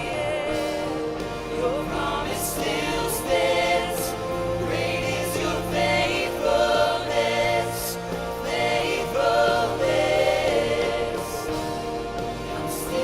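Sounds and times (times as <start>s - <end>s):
choir singing: 0.0s - 13.0s
instrumental accompaniment: 0.0s - 13.0s.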